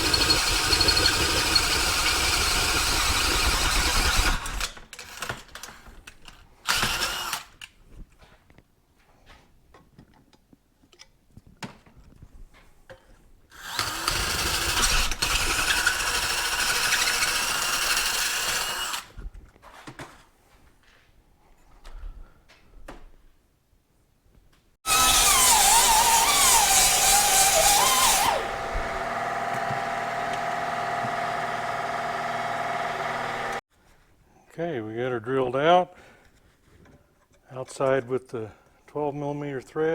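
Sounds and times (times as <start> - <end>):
electric drill boring metal: 0.0 - 4.7, 6.7 - 7.4, 13.6 - 19.1, 24.9 - 33.6.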